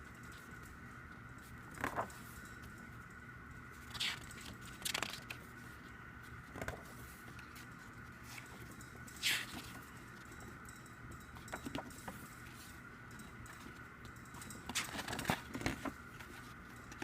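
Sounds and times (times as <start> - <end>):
faint electrical hum: 0.0 - 17.0
paper and card rustling: 1.5 - 2.4, 3.8 - 8.6, 14.6 - 17.0.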